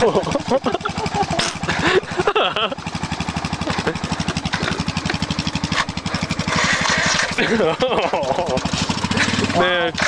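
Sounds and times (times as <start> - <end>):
atv engine idling: 0.0 - 10.0.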